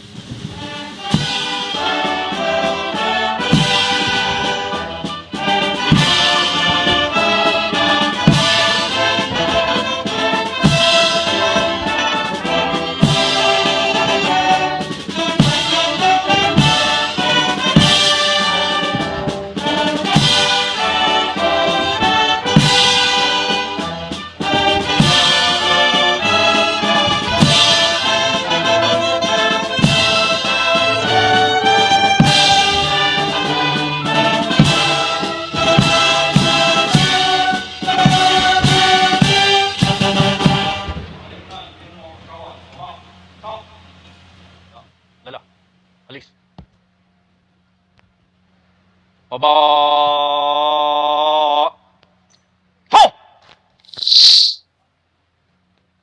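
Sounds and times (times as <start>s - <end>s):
brass band playing a march: 0.0s - 41.5s.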